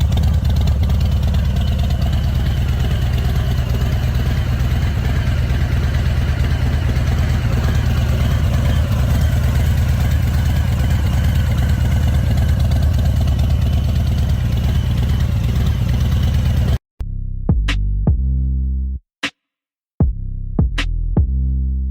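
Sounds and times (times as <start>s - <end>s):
motorcycle engine idling: 0.0s - 16.8s.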